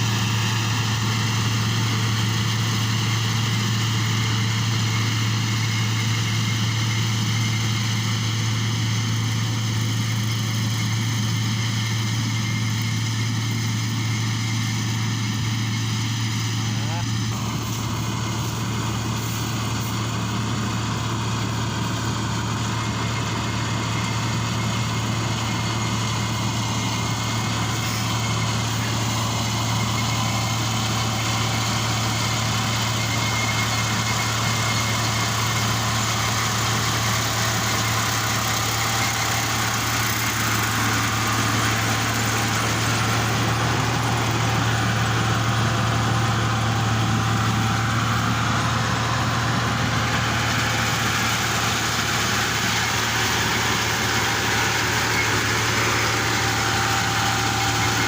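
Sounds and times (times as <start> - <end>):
diesel engine droning: 0.0 - 58.0.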